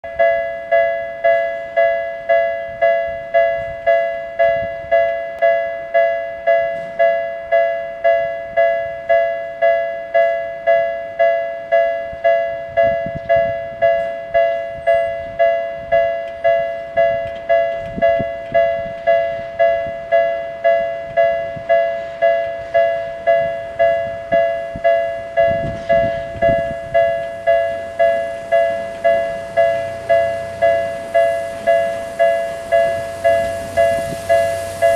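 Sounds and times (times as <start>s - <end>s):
train passing low rumble: 0.0s - 34.9s
level crossing bell ringing: 0.1s - 34.9s.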